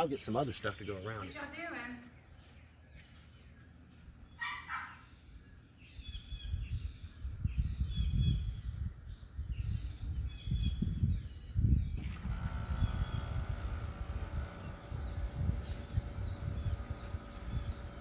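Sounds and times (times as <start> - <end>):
high bird chirps: 4.2 - 18.0
dog barking: 4.4 - 5.1
low rumbling noise: 9.5 - 18.0.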